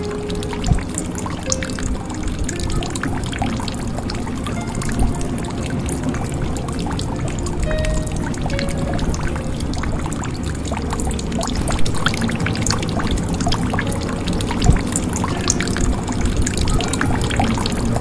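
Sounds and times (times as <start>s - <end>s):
water drips and plinks: 0.0s - 18.0s
water plops: 0.0s - 18.0s.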